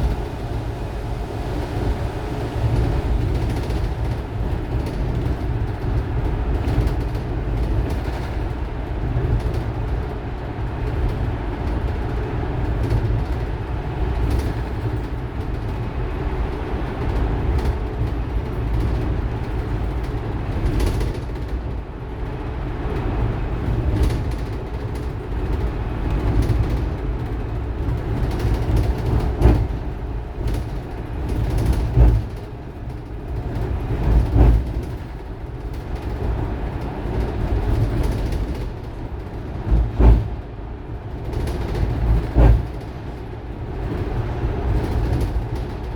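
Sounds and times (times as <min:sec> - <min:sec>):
electric bus motor drone: 0:00.0 - 0:05.1.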